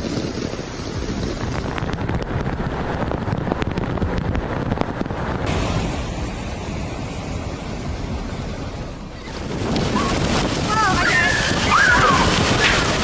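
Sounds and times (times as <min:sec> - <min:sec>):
wind buffeting microphone: 0:00.0 - 0:13.0
rushing splashing floodwater: 0:08.4 - 0:13.0.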